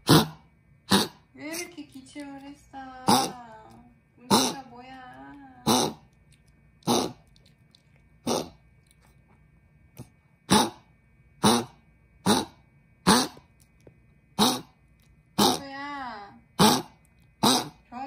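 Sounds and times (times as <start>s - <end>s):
dog coughing: 0.0s - 1.3s, 3.0s - 3.4s, 4.3s - 4.7s, 5.6s - 6.0s, 6.8s - 7.2s, 8.2s - 8.6s, 10.5s - 13.5s, 14.4s - 14.7s, 15.4s - 15.7s, 16.6s - 17.8s.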